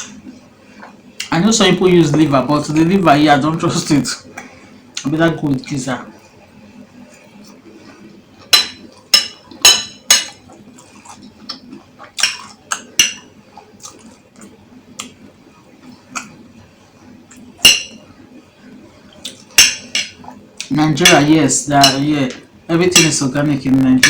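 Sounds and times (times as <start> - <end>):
cutlery tapping against a dish: 8.5 - 10.4, 12.2 - 13.3, 17.3 - 18.0, 19.3 - 23.2.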